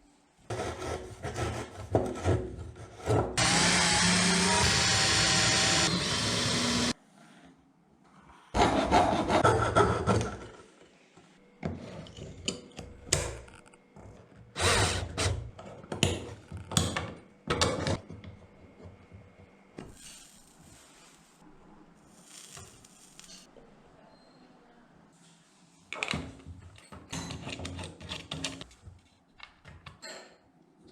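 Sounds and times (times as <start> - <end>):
file rasping on wood: 0.5 - 2.3, 8.6 - 10.1
saw cutting wood: 3.4 - 7.0, 14.6 - 15.4.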